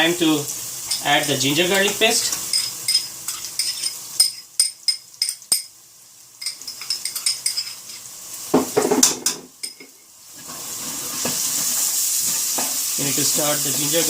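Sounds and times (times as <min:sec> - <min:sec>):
metal spoon clinking on cookware: 0:00.9 - 0:05.7, 0:06.4 - 0:07.9, 0:08.8 - 0:09.9.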